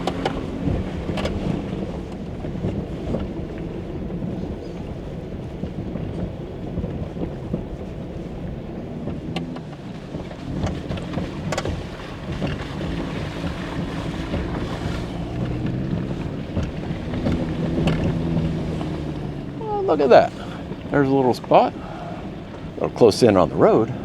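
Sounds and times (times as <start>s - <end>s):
sharp clicks and knocks: 0.0s - 3.7s, 5.6s - 19.6s
off-road vehicle engine running: 0.0s - 24.0s
tyre and road rumble: 0.0s - 24.0s.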